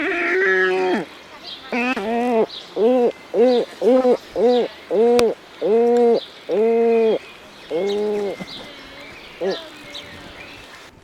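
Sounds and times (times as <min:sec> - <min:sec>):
cormorant deep calls: 0:00.0 - 0:01.1, 0:01.7 - 0:09.8.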